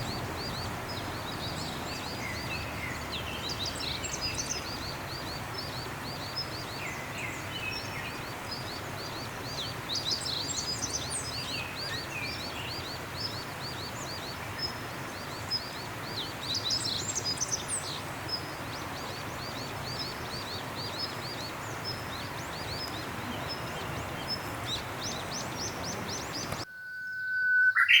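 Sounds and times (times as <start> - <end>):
small birds singing: 0.0 - 28.0
steady outdoor hiss: 0.0 - 28.0
loud tone rising in pitch: 26.7 - 27.8.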